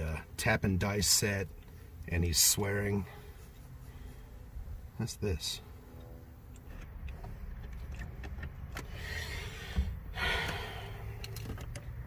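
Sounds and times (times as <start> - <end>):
bolt metal clicks and scraping: 11.1 - 12.0.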